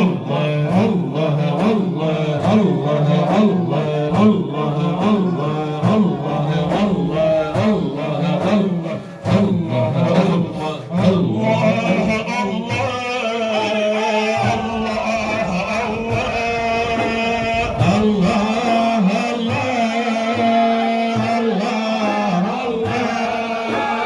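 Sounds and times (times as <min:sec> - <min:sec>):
faint regular beats: 0:00.0 - 0:24.0
lead singer wavering melody: 0:00.0 - 0:24.0
men chanting low: 0:00.0 - 0:24.0.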